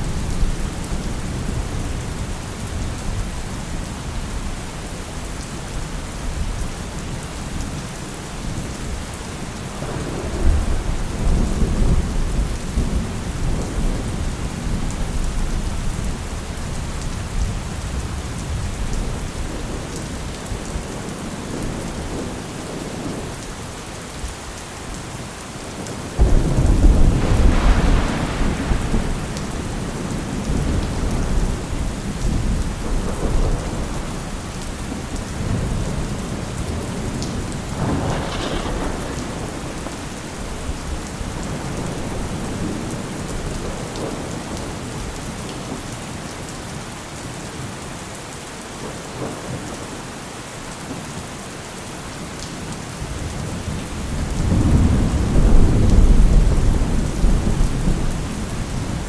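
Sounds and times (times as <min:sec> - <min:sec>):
steady rain: 0:00.0 - 0:59.0
rolling thunder: 0:09.6 - 0:19.8, 0:26.2 - 0:45.2, 0:53.1 - 0:59.0.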